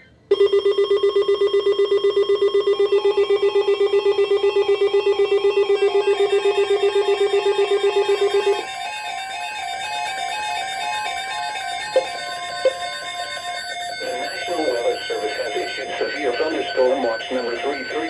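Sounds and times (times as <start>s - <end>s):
high two-note warble: 5.8s - 18.0s.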